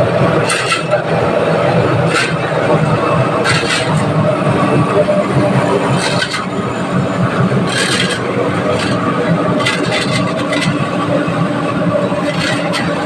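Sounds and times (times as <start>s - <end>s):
machine motor hum: 0.0s - 13.0s.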